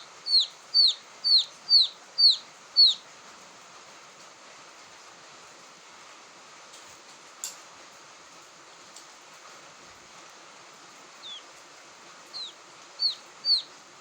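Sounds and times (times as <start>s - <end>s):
quail chick peeping: 0.0s - 3.1s, 11.2s - 11.6s, 12.3s - 13.9s
steady hiss: 0.0s - 14.0s.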